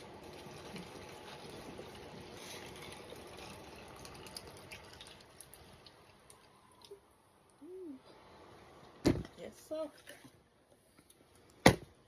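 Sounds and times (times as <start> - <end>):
juice pouring over ice: 0.0 - 7.0.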